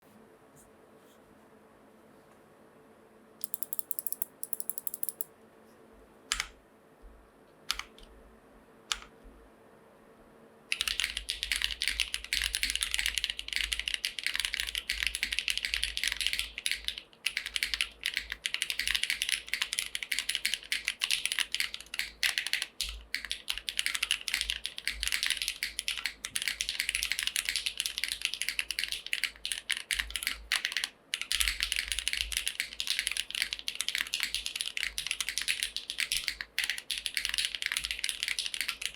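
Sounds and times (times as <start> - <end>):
mechanical keyboard typing: 3.4 - 5.3, 6.3 - 6.6, 7.7 - 8.1, 8.9 - 9.1, 10.7 - 38.9.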